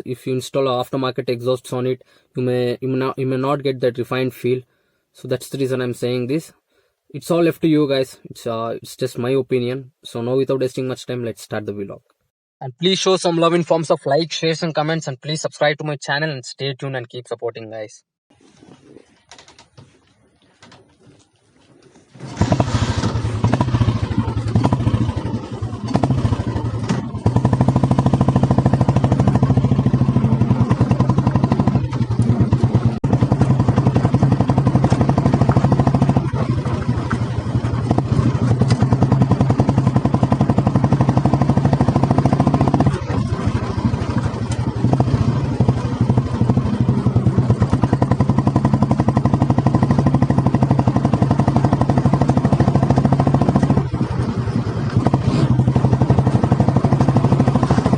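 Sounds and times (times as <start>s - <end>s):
motorcycle exhaust thumping: 22.2s - 57.9s.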